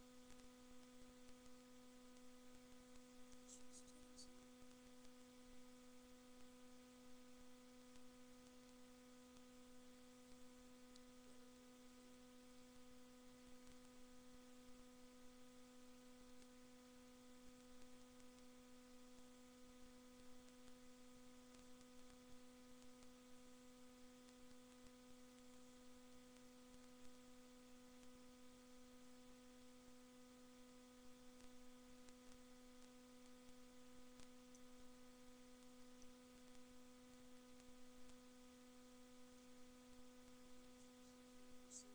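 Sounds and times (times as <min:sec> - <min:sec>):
steady electrical hum: 0:00.0 - 0:41.9.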